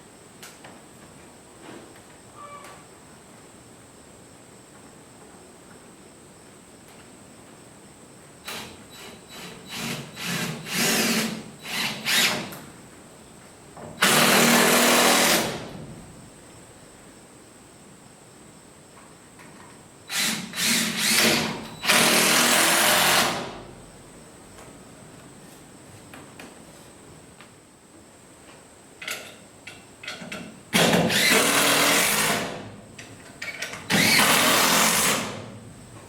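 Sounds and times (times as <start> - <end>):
power drill driving screws: 8.5 - 12.6, 14.0 - 15.7, 20.1 - 23.6, 30.8 - 32.6, 33.8 - 35.4.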